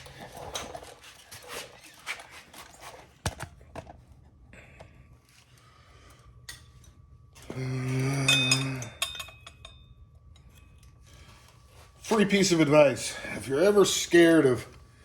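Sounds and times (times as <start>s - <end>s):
tools clinking: 6.4s - 11.0s.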